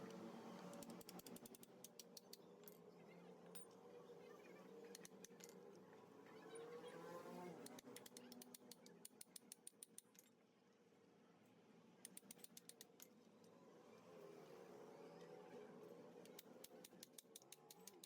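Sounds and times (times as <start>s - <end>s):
hand tool metallic clicking: 12.0s - 13.1s, 16.2s - 18.0s.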